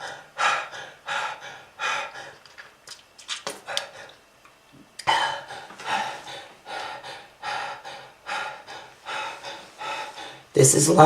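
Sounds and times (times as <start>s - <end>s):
person breathing heavily: 0.0s - 2.6s, 3.6s - 4.2s, 5.0s - 10.6s.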